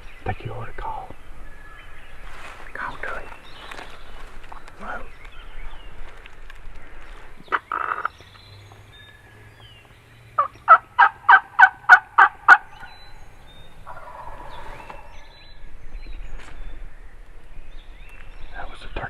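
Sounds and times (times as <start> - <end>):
short rustle: 2.1 - 4.8
turkey call yelping: 7.5 - 8.1, 10.4 - 13.1, 13.8 - 15.2.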